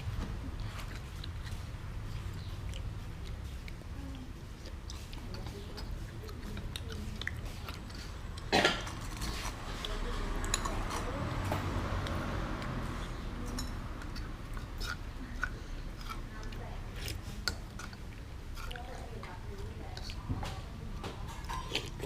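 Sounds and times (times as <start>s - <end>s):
low background hum: 0.0s - 22.0s
utensils clinking on a bowl: 7.8s - 11.7s, 13.4s - 16.2s, 21.0s - 22.0s.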